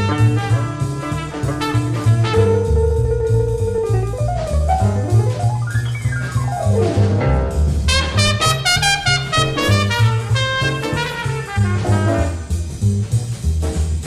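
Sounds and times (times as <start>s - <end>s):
trumpet lead: 0.0s - 4.5s, 7.9s - 12.6s
bass: 0.0s - 14.0s
drum kit beat: 0.0s - 14.0s.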